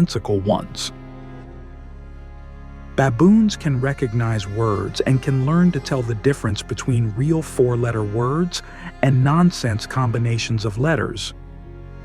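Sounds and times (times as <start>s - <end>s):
soft sad background music: 0.0s - 12.0s.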